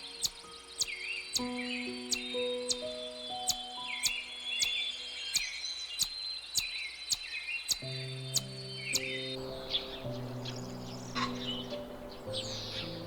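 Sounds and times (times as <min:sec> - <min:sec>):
music of slow held notes: 0:00.0 - 0:06.2, 0:07.8 - 0:13.0
sharp chirping call: 0:00.0 - 0:13.0.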